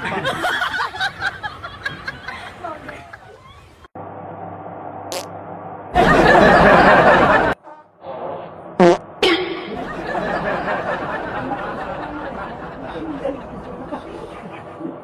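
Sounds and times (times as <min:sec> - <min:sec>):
people laughing and chattering: 0:00.0 - 0:03.8, 0:09.7 - 0:15.0
fart sounds: 0:05.1 - 0:05.3, 0:08.0 - 0:09.8.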